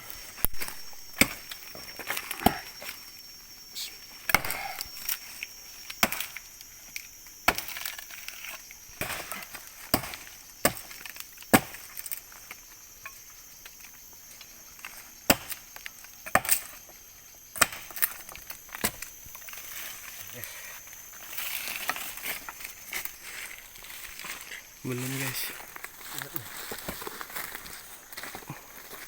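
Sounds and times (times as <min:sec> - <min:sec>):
blade chopping tree trunk: 0:00.4 - 0:02.8, 0:04.3 - 0:05.2, 0:05.9 - 0:06.5, 0:07.4 - 0:12.2, 0:14.9 - 0:19.8.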